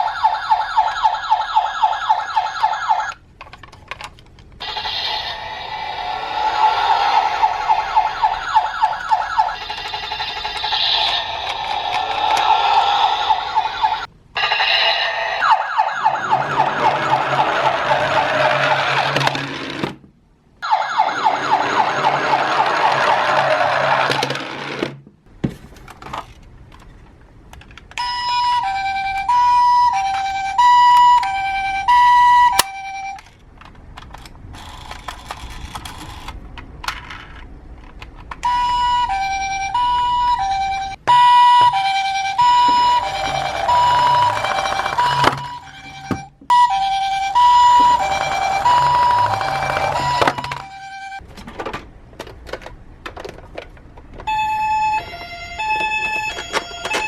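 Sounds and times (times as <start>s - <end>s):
toy siren hi-lo: 0.0s - 3.2s, 4.6s - 19.3s, 20.6s - 24.2s, 28.0s - 33.2s, 38.4s - 51.2s, 54.3s - 57.0s
harsh rattling siren buzz: 4.6s - 19.6s, 20.6s - 24.2s, 38.4s - 51.2s.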